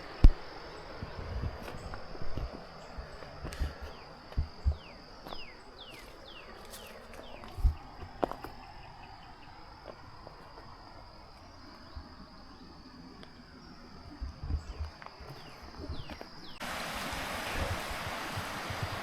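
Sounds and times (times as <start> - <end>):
insects buzzing: 0.0 - 19.0
low thumps: 1.0 - 5.4.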